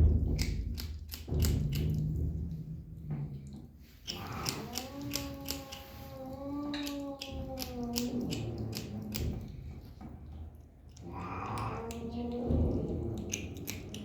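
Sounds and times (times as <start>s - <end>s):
kitten crunchy chewing: 3.4s - 14.0s
kitten humming: 4.1s - 9.8s, 10.9s - 14.0s.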